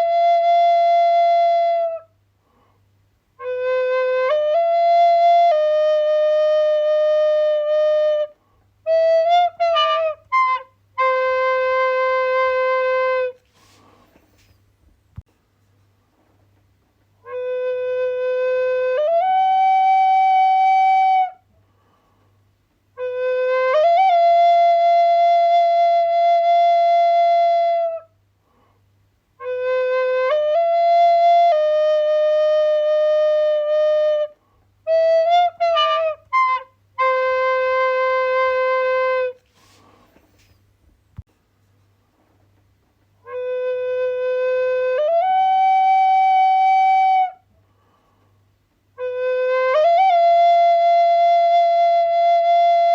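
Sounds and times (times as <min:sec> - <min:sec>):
flute-like wind instrument: 0:00.0 - 0:02.2, 0:03.4 - 0:14.6, 0:17.2 - 0:21.5, 0:23.0 - 0:28.2, 0:29.4 - 0:40.6, 0:43.2 - 0:47.5, 0:49.0 - 0:52.9.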